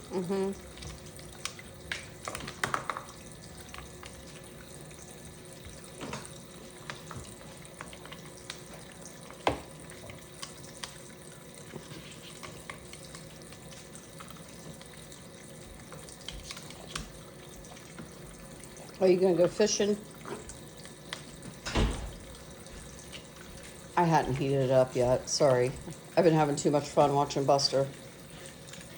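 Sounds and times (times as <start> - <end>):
faucet running water: 0.0 - 28.9
clicks and knocks of dishes: 2.3 - 3.2.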